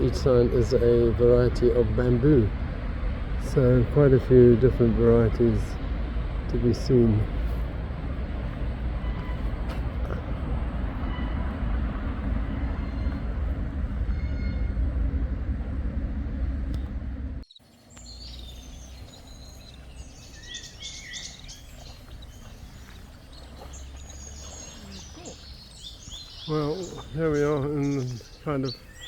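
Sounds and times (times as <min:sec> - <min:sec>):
birds chirping and calling: 0:00.0 - 0:15.2, 0:17.5 - 0:29.0
loud steady rumbling: 0:00.0 - 0:17.4.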